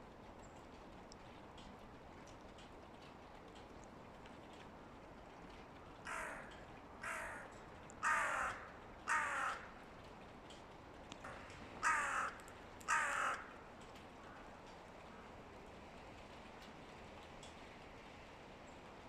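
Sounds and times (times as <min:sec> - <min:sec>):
crow cawing: 0:06.1 - 0:09.8, 0:11.3 - 0:13.6.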